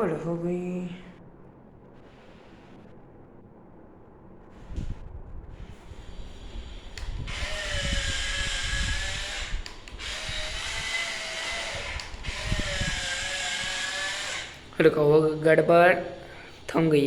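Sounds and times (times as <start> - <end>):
small electric motors whining: 5.7 - 14.7.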